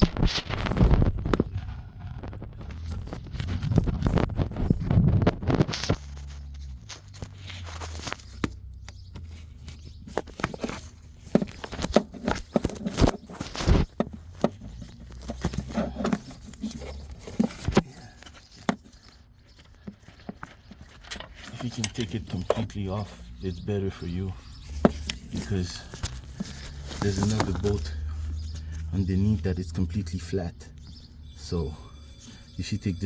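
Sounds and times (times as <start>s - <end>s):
hand tools clinking on metal parts: 20.4s - 23.0s.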